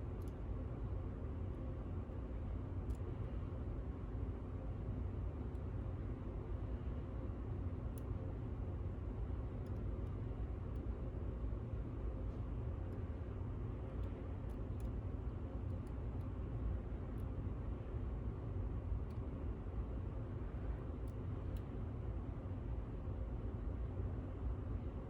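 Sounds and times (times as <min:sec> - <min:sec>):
steady low rumble: 0:00.0 - 0:25.0.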